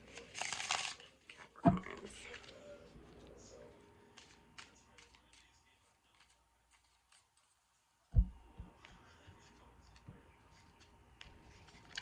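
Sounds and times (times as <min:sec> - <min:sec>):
cards rustling: 0:00.0 - 0:01.5, 0:04.1 - 0:07.6, 0:08.7 - 0:12.0.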